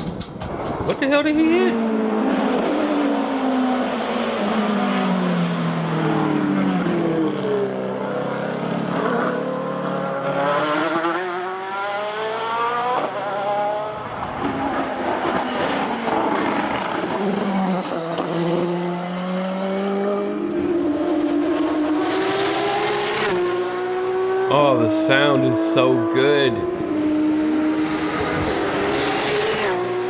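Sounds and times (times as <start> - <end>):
race car engine at full throttle: 0.4 - 30.0.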